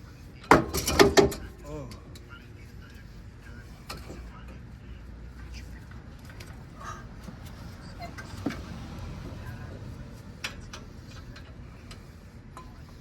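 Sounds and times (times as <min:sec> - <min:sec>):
tools and metal parts knocking: 0:00.5 - 0:01.5.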